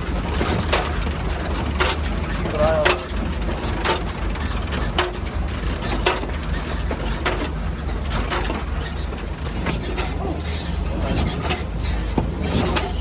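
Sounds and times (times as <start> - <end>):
steady low rumble: 0.0 - 9.6
winch ratcheting clicks: 0.0 - 10.1.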